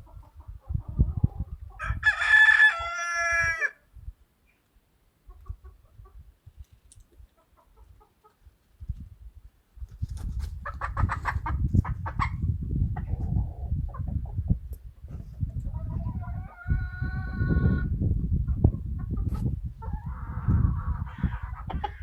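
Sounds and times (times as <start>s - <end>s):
hens clucking: 5.2s - 6.2s, 7.3s - 8.5s, 10.5s - 22.0s.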